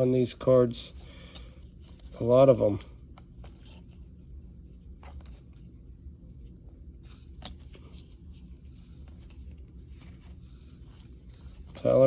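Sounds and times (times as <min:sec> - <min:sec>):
steady low hum: 0:00.0 - 0:12.0
cards rustling and clicking: 0:00.9 - 0:04.2, 0:04.8 - 0:05.7, 0:07.0 - 0:12.0.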